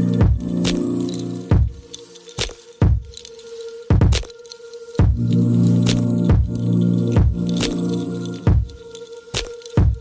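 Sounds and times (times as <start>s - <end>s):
music with deep thumping beat: 0.0s - 3.1s, 3.9s - 4.3s, 5.0s - 8.8s, 9.4s - 10.0s.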